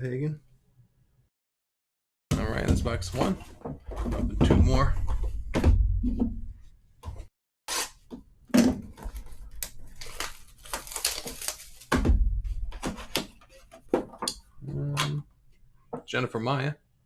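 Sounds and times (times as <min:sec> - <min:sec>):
packaging tearing and crinkling: 0:09.1 - 0:11.9.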